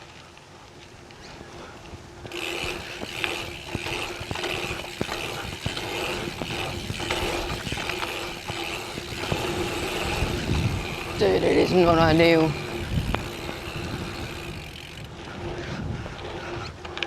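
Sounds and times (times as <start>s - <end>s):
bike knocking and rattling: 0.0s - 17.0s
tyre and wind noise: 0.0s - 17.0s.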